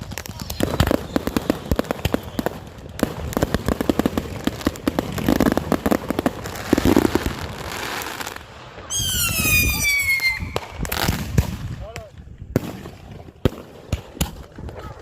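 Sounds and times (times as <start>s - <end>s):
fireworks crackling: 0.0s - 15.0s
firework whistle gliding down: 8.9s - 11.1s.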